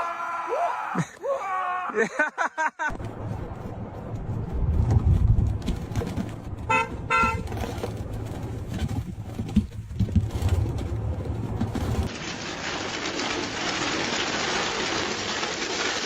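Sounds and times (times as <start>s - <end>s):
steady low rumble: 2.9s - 7.1s
vehicle horn toots: 6.6s - 7.6s.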